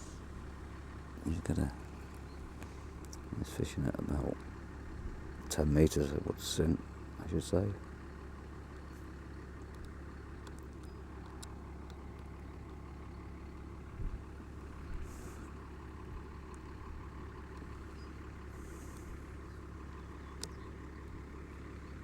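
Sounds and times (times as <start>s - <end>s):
steady low hum: 8.6s - 22.0s
faint clicks: 9.6s - 12.8s, 20.2s - 20.8s.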